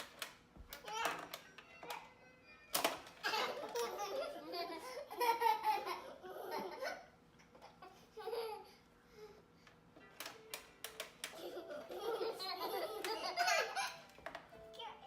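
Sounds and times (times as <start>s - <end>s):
young child laughing: 3.2s - 8.8s, 11.3s - 14.2s.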